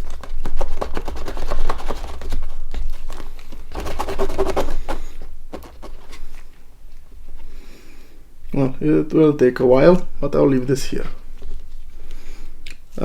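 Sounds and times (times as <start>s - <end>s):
plastic parts crackling in foam: 0.0s - 7.0s.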